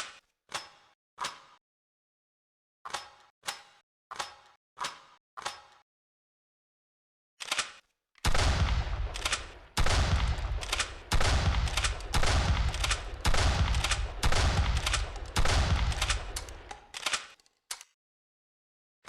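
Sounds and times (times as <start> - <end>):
shotgun blasts: 8.3 - 16.7.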